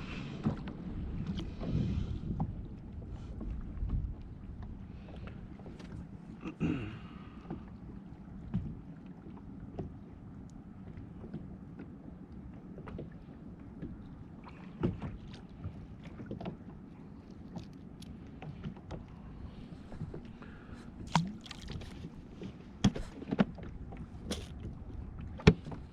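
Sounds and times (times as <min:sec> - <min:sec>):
wind on microphone: 0:00.0 - 0:05.2.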